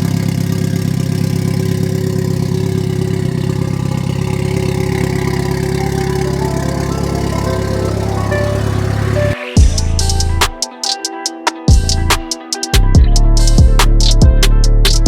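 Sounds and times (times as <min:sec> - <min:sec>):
car engine idling: 0:00.0 - 0:10.4.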